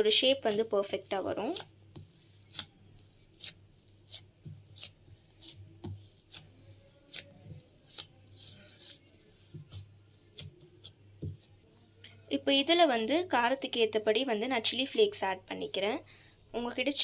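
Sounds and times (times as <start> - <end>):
potatoes being mashed in bowl: 0.0 - 11.6.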